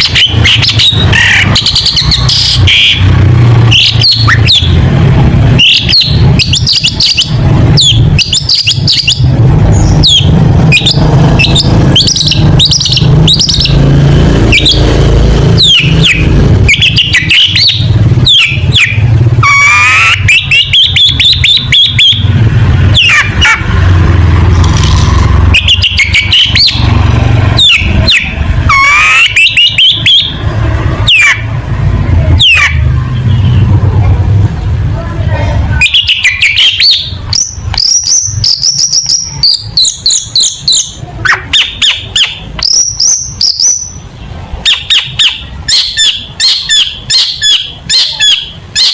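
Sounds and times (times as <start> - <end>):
bird singing: 0.0 - 31.6, 32.3 - 33.8, 35.7 - 48.9
buzzy trilled bird phrases: 0.0 - 33.7, 34.6 - 48.9.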